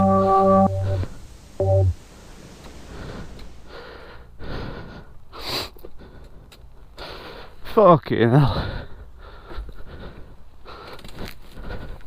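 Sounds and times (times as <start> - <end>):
steady buzzing tone: 0.0 - 2.4
heavy noisy breathing: 2.1 - 7.6, 8.5 - 12.0.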